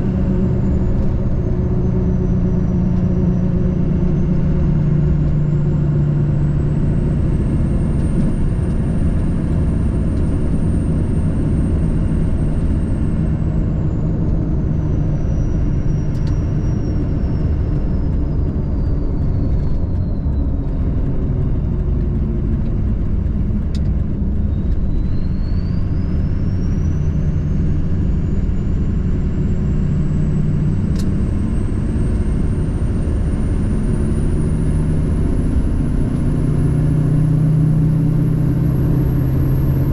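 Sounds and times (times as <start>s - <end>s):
truck engine and road noise: 0.0s - 39.9s.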